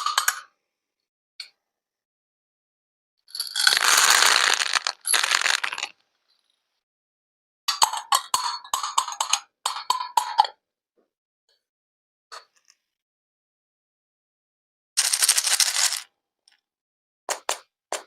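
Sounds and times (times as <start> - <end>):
small hard objects clinking: 3.4 - 5.9, 15.0 - 16.0.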